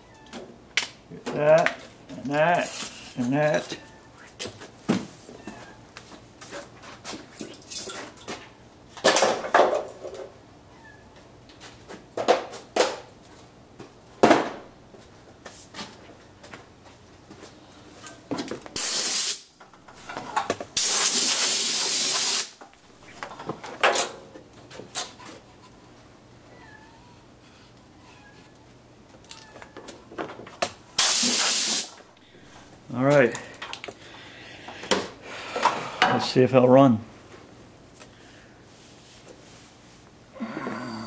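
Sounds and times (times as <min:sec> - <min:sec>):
hissing spray: 0:18.8 - 0:19.5, 0:20.8 - 0:22.5, 0:31.0 - 0:32.0.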